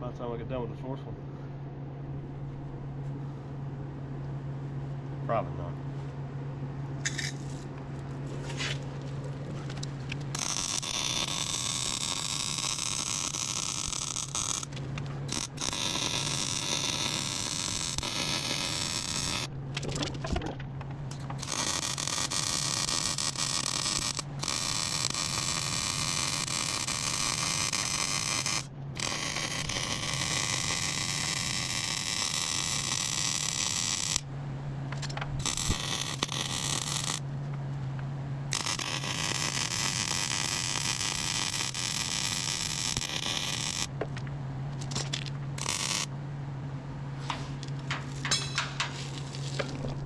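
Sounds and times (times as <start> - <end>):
welder humming: 7.0 - 19.8, 21.0 - 50.0
welding arc crackling and hissing: 10.2 - 19.5, 21.4 - 34.2, 35.4 - 37.2, 38.5 - 43.9, 44.8 - 46.1, 49.0 - 50.0.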